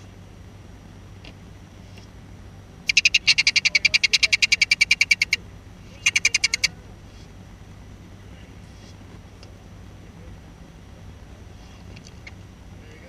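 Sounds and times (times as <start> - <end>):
animal's rapid pulsed trill: 2.8 - 6.8.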